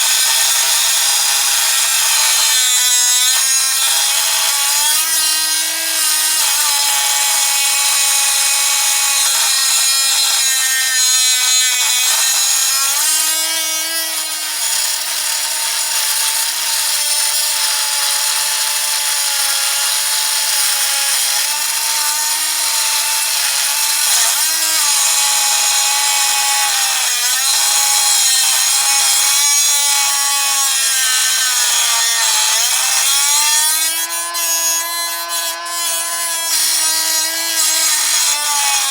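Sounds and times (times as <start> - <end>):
rotary tool grinding metal: 0.0 - 38.9.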